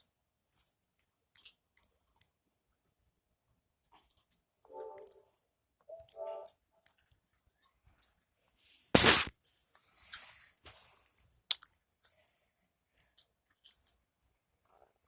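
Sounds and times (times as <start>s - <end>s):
scrape near microphone: 9.0s - 9.3s
sharp clicks: 9.0s - 9.3s.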